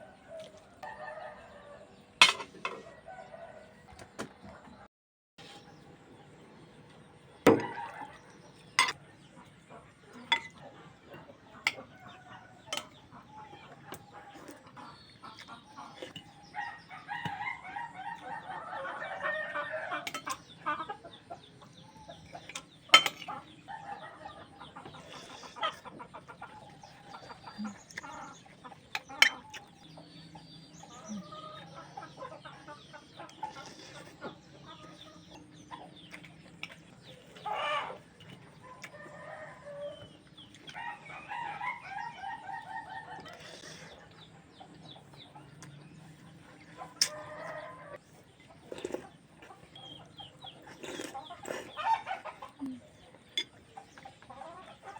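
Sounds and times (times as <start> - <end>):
rooster crowing: 0.0 - 1.8, 40.8 - 43.2
chickens clucking: 0.0 - 54.9.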